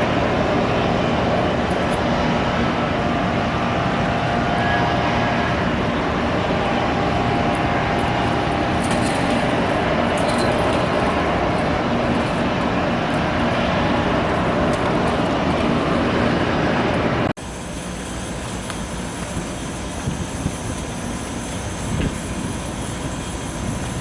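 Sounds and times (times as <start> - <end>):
loud rushing noise: 0.0 - 24.0.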